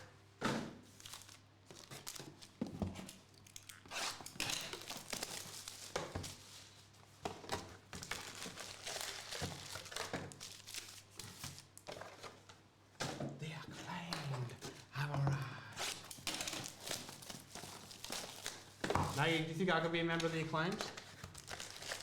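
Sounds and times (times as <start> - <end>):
plastic packaging crinkling: 0.9 - 6.8, 7.8 - 11.9, 15.9 - 22.0.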